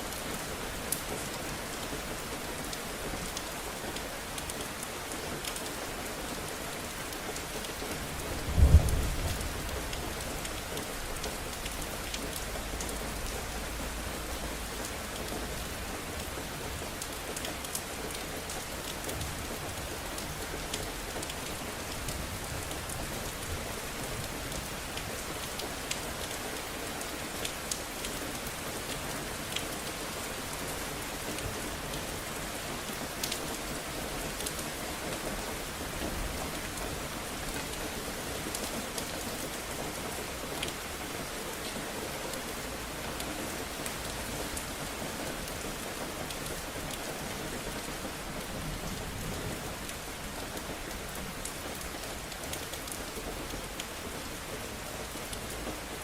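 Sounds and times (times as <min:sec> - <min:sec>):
steady rain falling: 0:00.0 - 0:56.0
thunder clap and rumble: 0:08.4 - 0:10.7.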